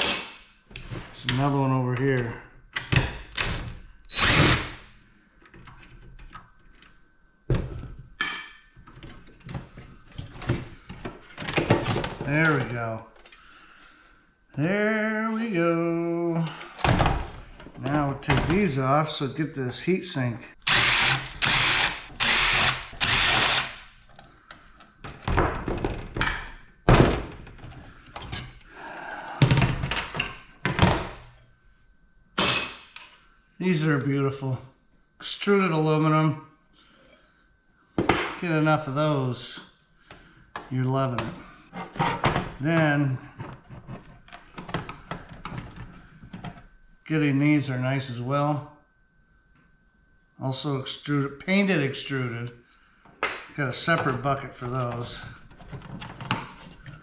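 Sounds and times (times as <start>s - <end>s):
cordless drill running: 4.1s - 4.8s, 20.6s - 23.8s.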